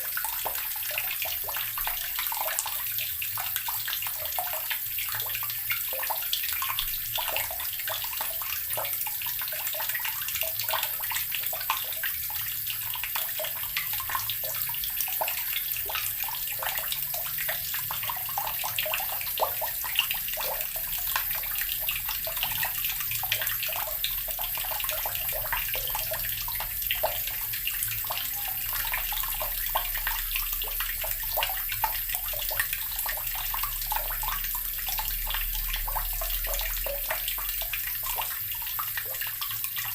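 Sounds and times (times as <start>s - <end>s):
tap water pouring into barrel: 0.0s - 39.9s.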